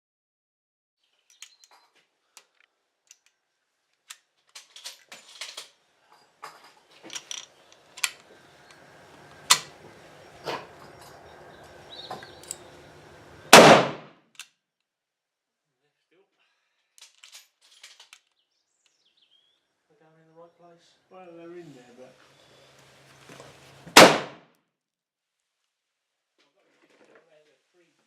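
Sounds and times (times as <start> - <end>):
rifle shots cracking: 12.5 - 14.1, 24.0 - 24.4.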